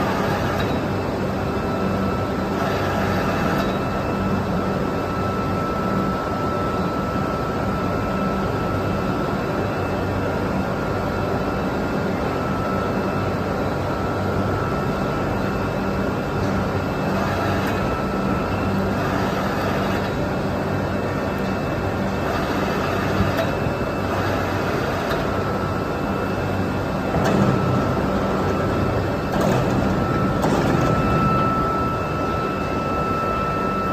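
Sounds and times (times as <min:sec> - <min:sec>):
foundry machinery hum: 0:00.0 - 0:33.9
faint steady high tone: 0:31.0 - 0:33.9.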